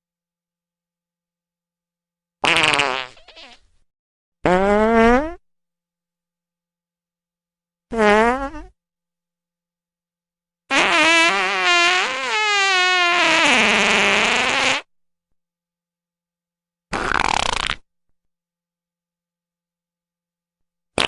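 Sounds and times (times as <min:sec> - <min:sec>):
farts: 0:02.4 - 0:03.7, 0:04.4 - 0:05.4, 0:07.9 - 0:08.8, 0:10.7 - 0:14.9, 0:16.9 - 0:17.9.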